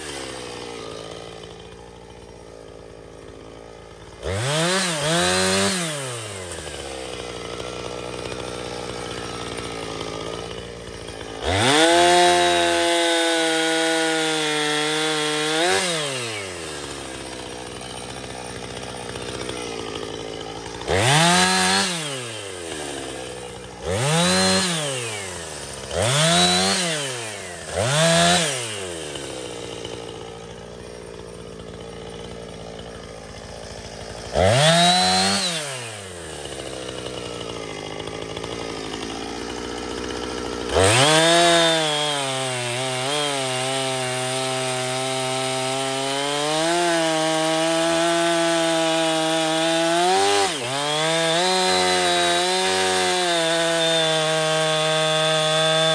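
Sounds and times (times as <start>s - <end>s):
chainsaw revving and cutting wood: 0.0s - 55.9s.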